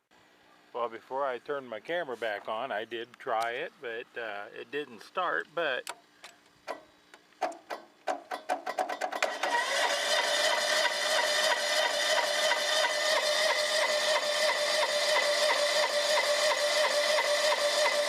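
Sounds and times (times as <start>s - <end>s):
tractor engine cranking and starting: 7.4s - 18.0s.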